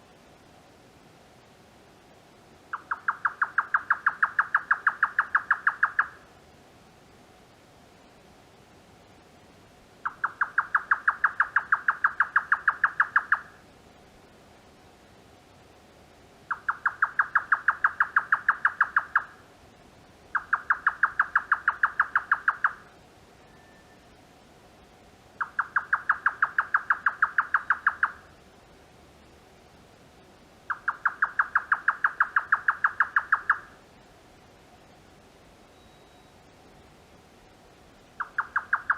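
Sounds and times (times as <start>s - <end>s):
nightjar call: 2.7s - 6.3s, 10.0s - 13.6s, 16.5s - 19.5s, 20.3s - 24.2s, 25.4s - 28.4s, 30.7s - 33.8s, 35.7s - 36.5s, 38.2s - 38.9s.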